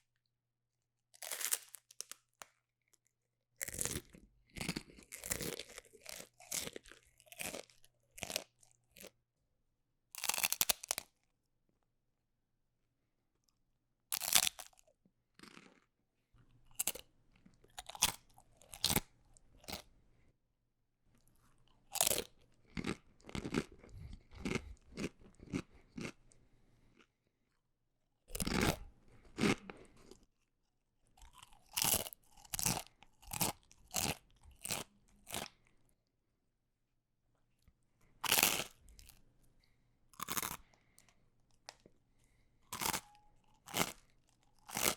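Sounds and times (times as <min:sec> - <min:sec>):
person biting and chewing crunchy food: 0:01.2 - 0:02.4, 0:03.6 - 0:09.1, 0:10.2 - 0:11.1, 0:14.1 - 0:15.8, 0:16.6 - 0:19.9, 0:21.2 - 0:27.1, 0:28.3 - 0:30.2, 0:31.2 - 0:35.7, 0:38.2 - 0:39.3, 0:40.1 - 0:41.9, 0:42.7 - 0:44.9.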